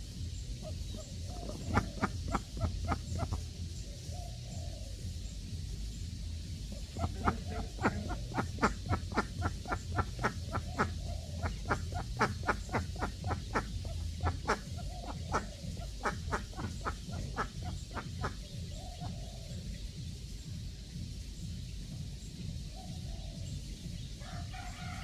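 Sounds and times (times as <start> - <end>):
duck quacking: 0.6 - 3.5, 6.7 - 18.4.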